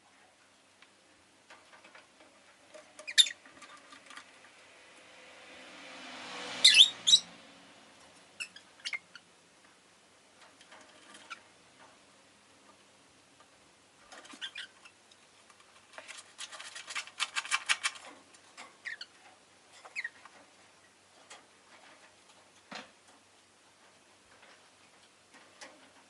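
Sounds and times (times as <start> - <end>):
lovebirds chirping: 3.0 - 3.5, 6.6 - 7.4, 8.4 - 9.3, 18.8 - 19.2.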